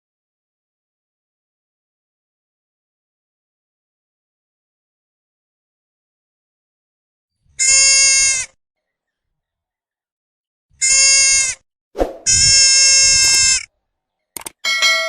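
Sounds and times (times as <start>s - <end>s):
deer bleating: 7.6s - 8.6s, 10.8s - 11.6s, 12.3s - 13.7s
sharp click: 14.4s - 14.6s.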